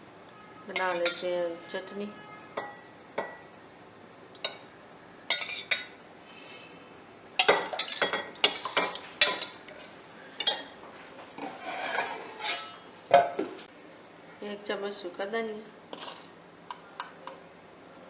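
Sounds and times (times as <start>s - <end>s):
spoons and dishes clinking: 0.8s - 1.4s, 5.3s - 6.0s, 7.4s - 10.7s.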